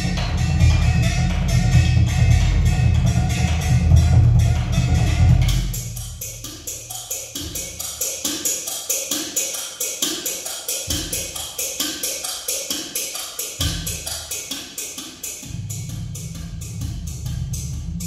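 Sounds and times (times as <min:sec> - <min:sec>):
deep bass notes: 0:00.0 - 0:07.6, 0:15.5 - 0:18.0.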